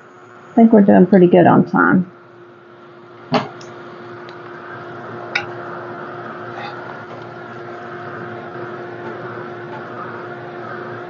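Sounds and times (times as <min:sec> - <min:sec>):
hot-air dryer humming: 0:02.2 - 0:11.0.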